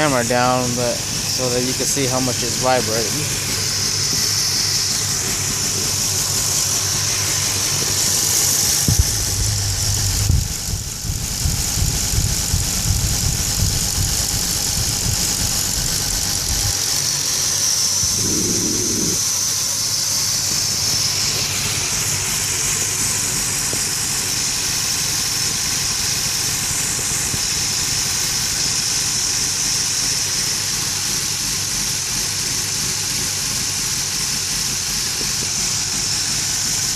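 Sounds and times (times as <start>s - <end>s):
car engine idling roughly: 0.0s - 36.9s
knocks and heavy low rumble: 8.8s - 16.7s.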